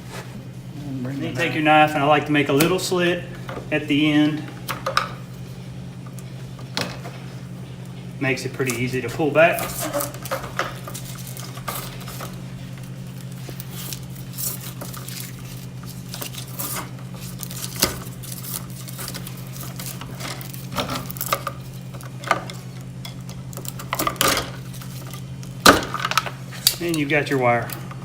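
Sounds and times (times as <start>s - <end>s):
low hum: 0.0s - 6.4s.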